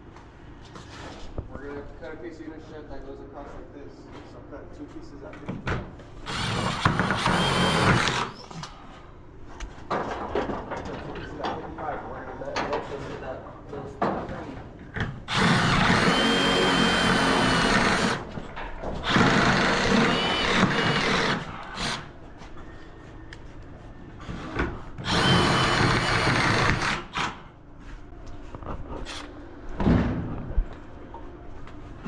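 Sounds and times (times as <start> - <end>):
power tool cutting steel: 6.3 - 8.4, 15.3 - 18.3, 25.0 - 27.4.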